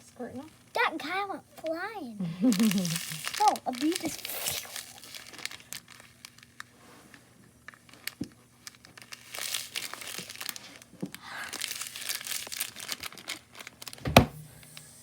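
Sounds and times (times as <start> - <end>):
slime crackling and popping: 2.5 - 6.7, 7.6 - 14.1.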